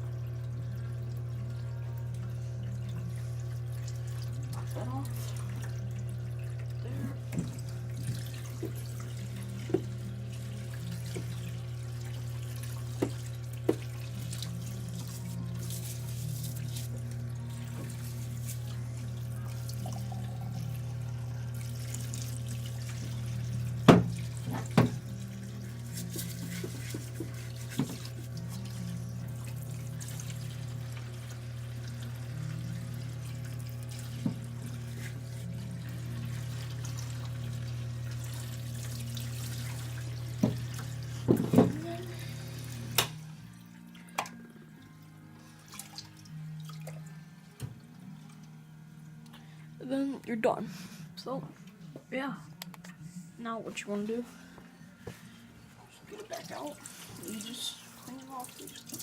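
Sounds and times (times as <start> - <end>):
tap water running into sink: 2.9 - 43.2, 56.1 - 59.0.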